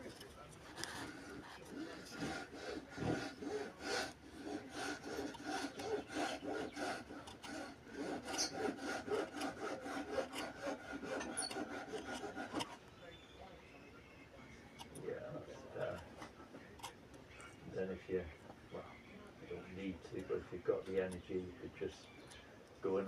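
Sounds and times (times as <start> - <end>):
hand saw cutting wood: 0.0 - 12.8.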